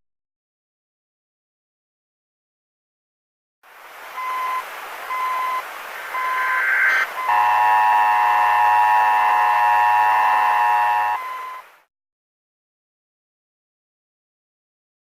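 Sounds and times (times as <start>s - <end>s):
short beeps: 4.2s - 5.6s, 6.2s - 11.7s
single tone: 4.2s - 5.6s, 6.2s - 11.7s.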